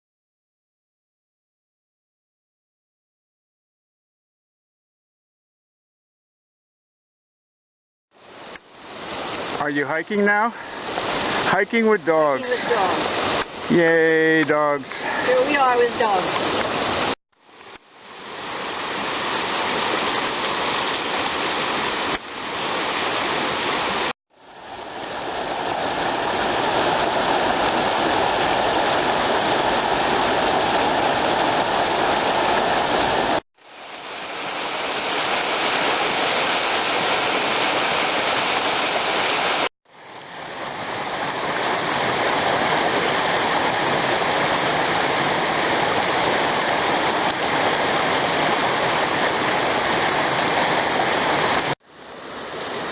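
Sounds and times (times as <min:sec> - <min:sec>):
creek water rushing: 0:08.1 - 0:52.9.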